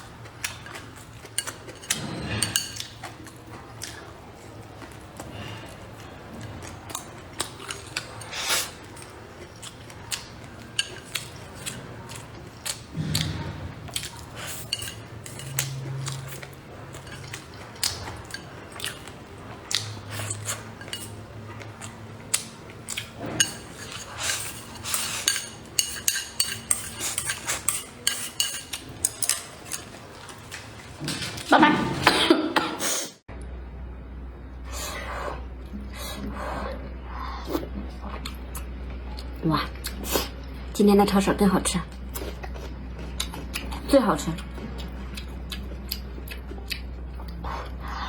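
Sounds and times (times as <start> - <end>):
utensils clinking on plates: 0.4 - 3.6, 6.6 - 32.2.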